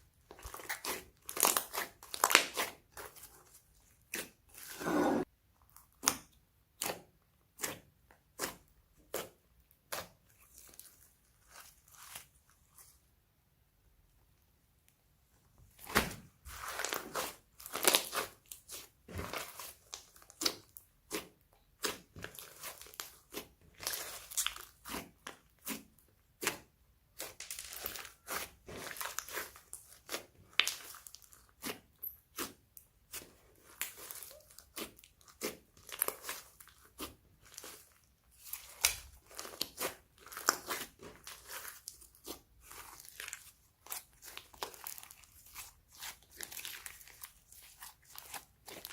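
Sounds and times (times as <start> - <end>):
slime crackling and popping: 0.4 - 3.2, 16.7 - 26.6, 27.2 - 48.9.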